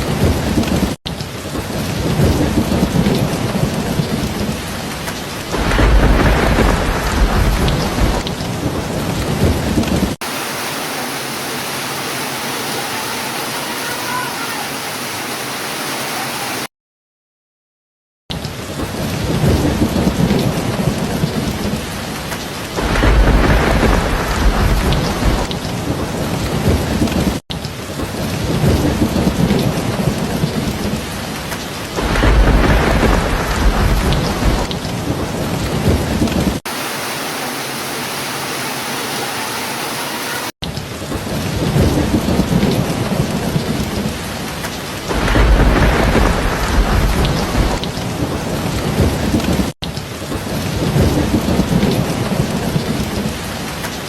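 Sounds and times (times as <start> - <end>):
rolling thunder rumbles: 0.0 - 10.2, 18.5 - 36.6, 40.9 - 53.8
steady rain falling: 0.0 - 16.7, 18.3 - 54.0.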